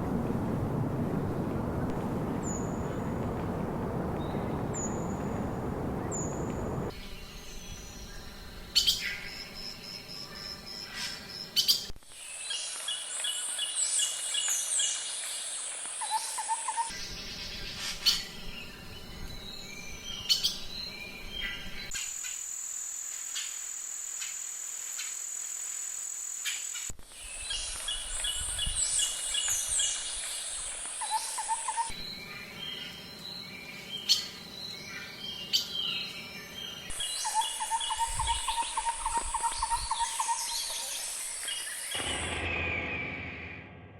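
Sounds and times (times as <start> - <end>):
steady high whine: 0.0 - 8.8, 41.8 - 43.9
birds singing and chirping: 1.2 - 11.9, 27.3 - 43.4.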